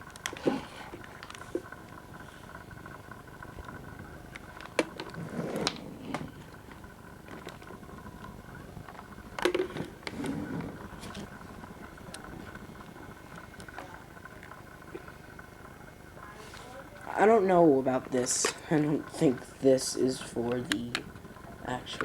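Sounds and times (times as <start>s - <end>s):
faint steady hum: 0.0s - 22.0s
sharp clicks of hard items: 8.9s - 11.4s.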